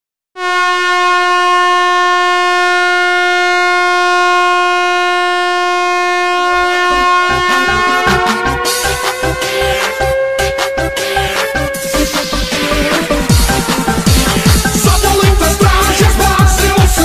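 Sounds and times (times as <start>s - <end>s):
goal horn blasting: 0.4s - 12.0s
rising synth sweep: 5.4s - 17.0s
electronic dance music: 6.5s - 17.0s
kick drum beating: 13.3s - 17.0s.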